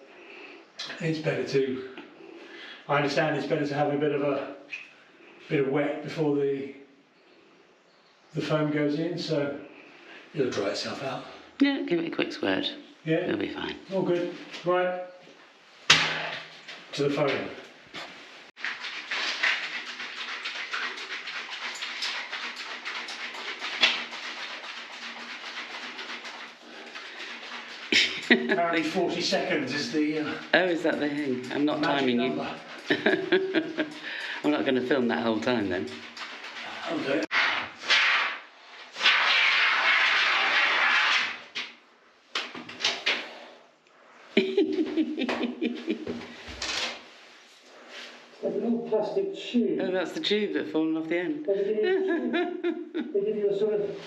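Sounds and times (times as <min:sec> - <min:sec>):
spray can rattling when shaken: 0:18.6 - 0:34.9
expanding foam can hissing: 0:37.3 - 0:41.5.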